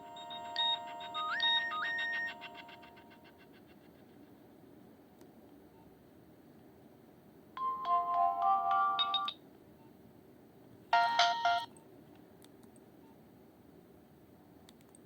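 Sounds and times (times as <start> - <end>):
mobile phone ringtone melody: 0.0 - 3.3, 7.6 - 9.4, 11.0 - 11.7.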